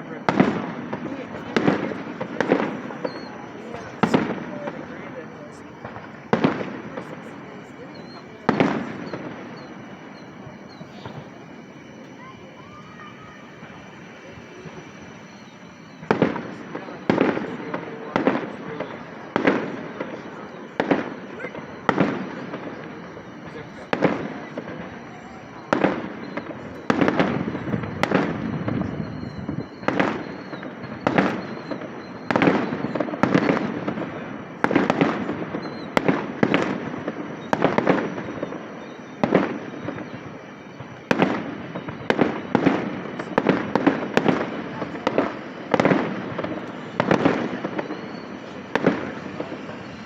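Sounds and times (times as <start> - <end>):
fireworks bursting: 0.0 - 50.0.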